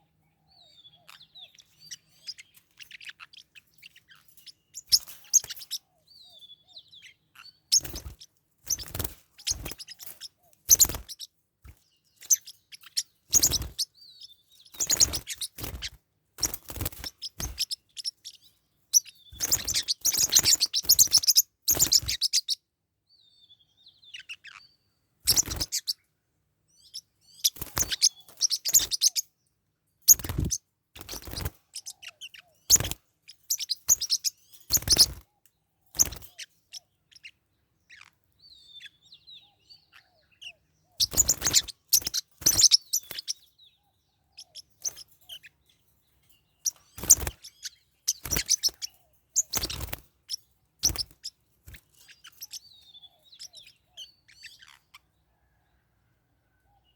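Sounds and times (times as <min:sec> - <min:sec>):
parrotlets chirping: 0:00.5 - 0:22.6, 0:24.0 - 0:26.1, 0:26.8 - 0:29.4, 0:30.1 - 0:35.3, 0:35.9 - 0:43.6, 0:44.2 - 0:55.6.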